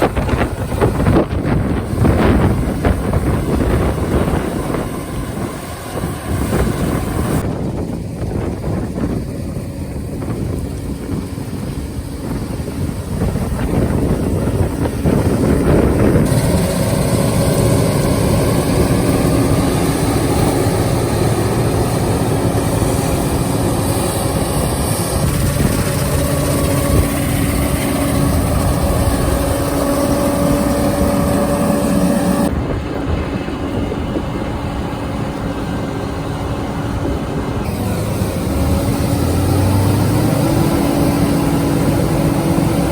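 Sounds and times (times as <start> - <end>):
combine harvester engine running: 0.0 - 42.9.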